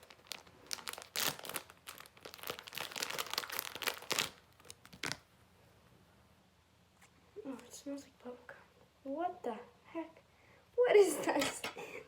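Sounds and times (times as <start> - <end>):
plastic packaging crinkling: 0.0 - 5.3.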